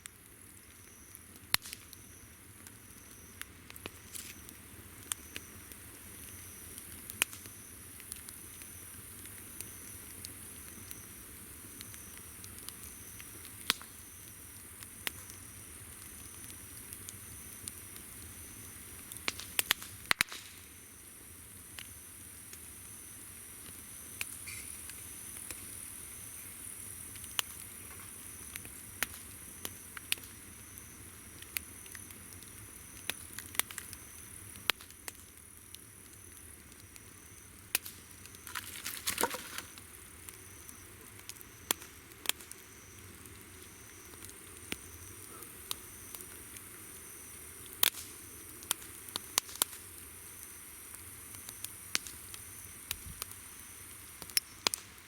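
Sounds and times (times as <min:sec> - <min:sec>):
campfire crackling and popping: 0:00.0 - 0:55.0
insects chirring: 0:20.4 - 0:54.8
pulsing insect call: 0:38.4 - 0:39.8.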